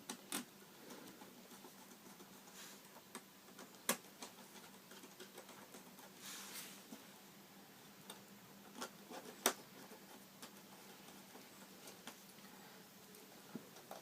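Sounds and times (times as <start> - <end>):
light scraping: 6.0 - 7.0.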